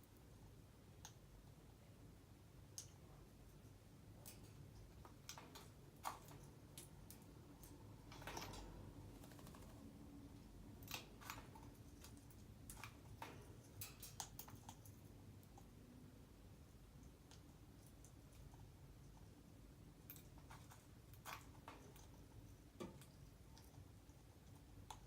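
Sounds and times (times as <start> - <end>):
faint irregular clicks and taps: 0.8 - 1.6, 2.6 - 9.7, 16.8 - 19.4, 20.0 - 25.0.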